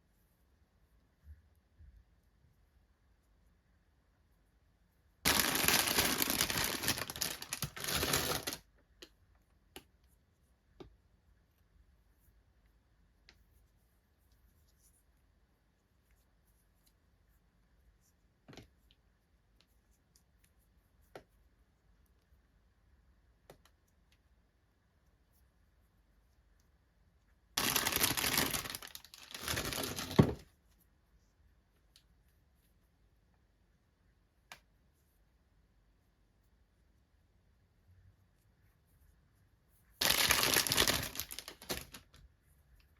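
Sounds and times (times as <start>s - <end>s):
packaging crinkling and tearing: 5.3s - 8.6s, 27.6s - 30.4s, 40.0s - 42.1s.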